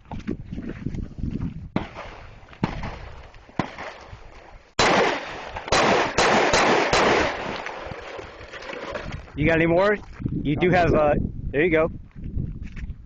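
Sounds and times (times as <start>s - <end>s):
pistol shots: 4.8s - 7.9s.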